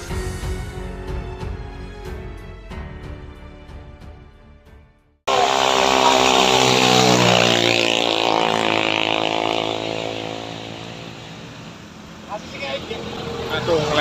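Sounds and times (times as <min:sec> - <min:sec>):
car engine straining: 0:05.3 - 0:14.0.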